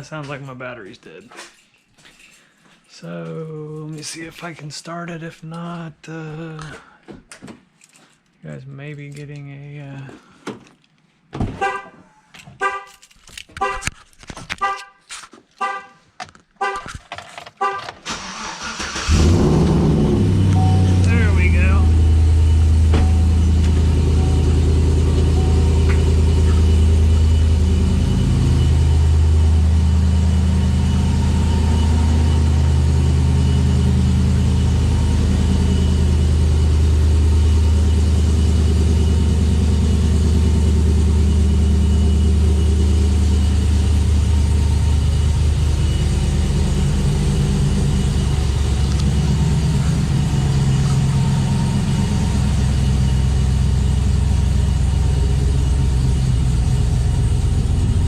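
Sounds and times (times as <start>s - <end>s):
pickup engine idling: 18.1s - 58.0s.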